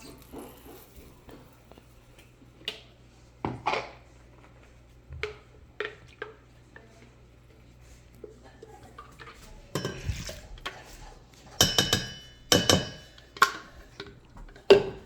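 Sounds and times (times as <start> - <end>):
kitchen utensils clinking: 8.6 - 15.0.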